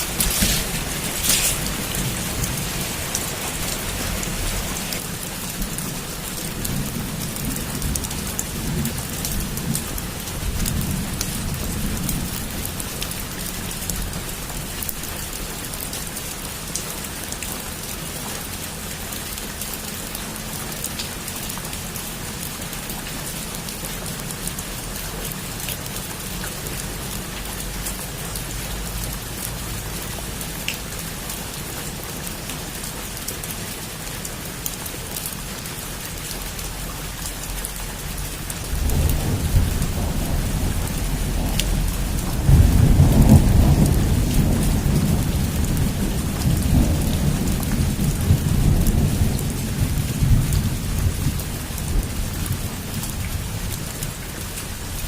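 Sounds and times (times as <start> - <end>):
thunder rumbling: 0.0 - 5.0, 38.6 - 53.6
heavy rain falling: 0.0 - 55.0.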